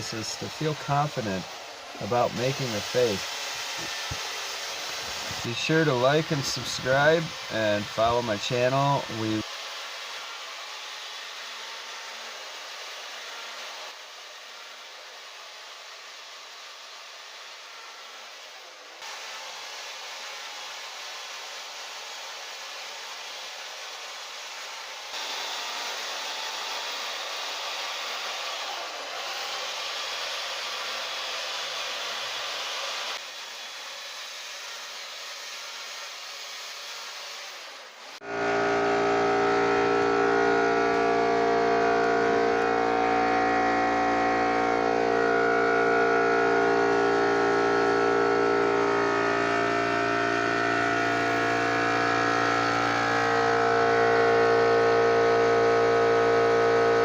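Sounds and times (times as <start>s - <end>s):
chainsaw running: 0.0s - 15.6s, 22.0s - 35.0s, 36.8s - 57.0s
steady hiss: 0.0s - 38.2s.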